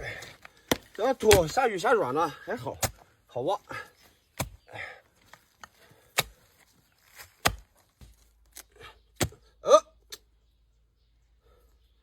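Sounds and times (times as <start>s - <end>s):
spade chopping into soil: 0.1s - 1.7s, 2.6s - 3.1s, 4.3s - 4.7s, 5.3s - 9.5s.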